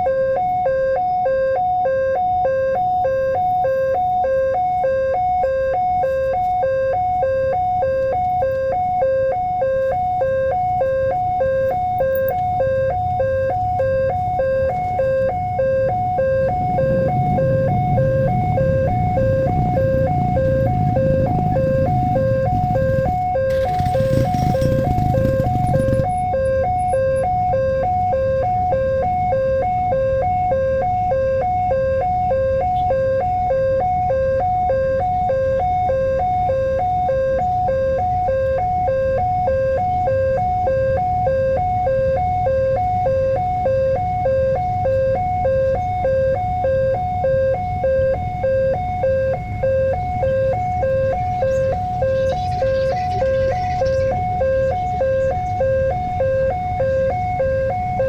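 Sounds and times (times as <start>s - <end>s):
level crossing two-tone alarm: 0.0s - 58.0s
low rumble: 14.6s - 26.3s.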